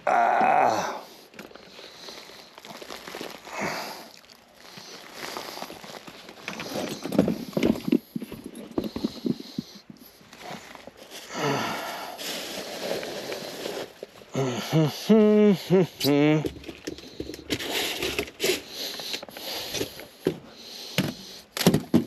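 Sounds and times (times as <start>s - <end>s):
rustling: 1.1s - 22.0s
knocks of person crawling: 19.8s - 22.0s.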